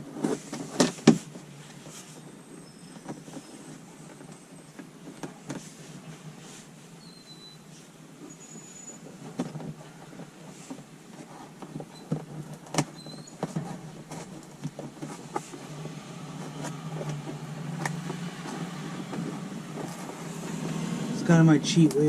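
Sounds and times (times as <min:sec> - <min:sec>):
steady low hum: 0:13.6 - 0:22.0.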